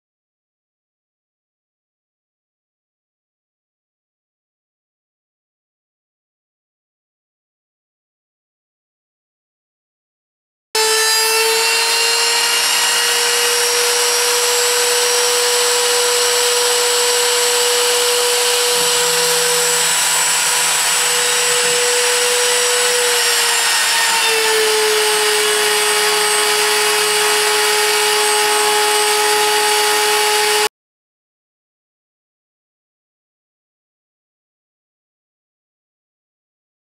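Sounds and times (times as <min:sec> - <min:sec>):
router spindle cutting wood: 0:10.8 - 0:30.7.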